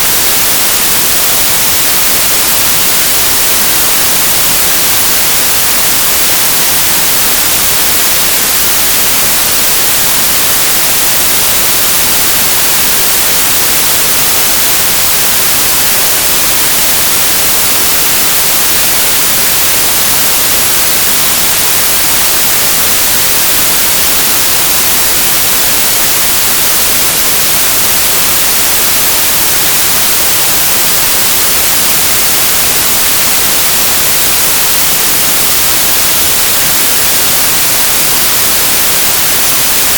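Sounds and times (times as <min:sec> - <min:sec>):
static hiss: 0:00.0 - 0:39.9.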